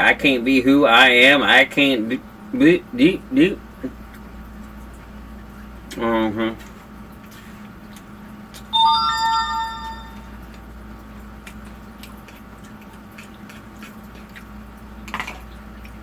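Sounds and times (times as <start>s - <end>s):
electronic notification chime: 8.8s - 10.4s.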